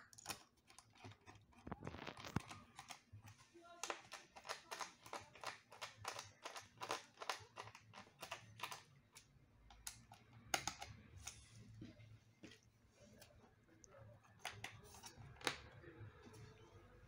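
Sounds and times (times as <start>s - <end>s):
plastic parts clicking: 0.0s - 11.4s.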